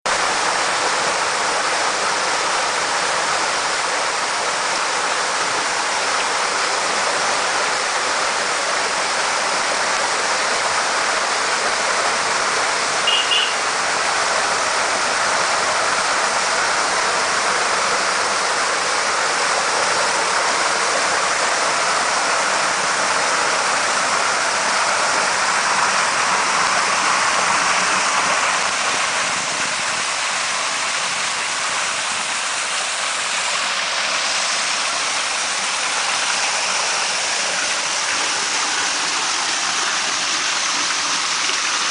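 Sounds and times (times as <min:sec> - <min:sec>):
waterfall splashing: 0:00.1 - 0:41.9.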